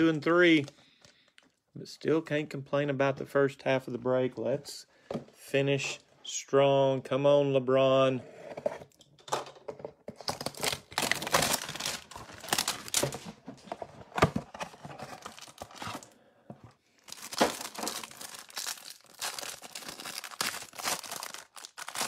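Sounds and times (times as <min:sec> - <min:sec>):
packaging tearing and crinkling: 0:10.2 - 0:13.3, 0:15.0 - 0:16.1, 0:17.0 - 0:22.0.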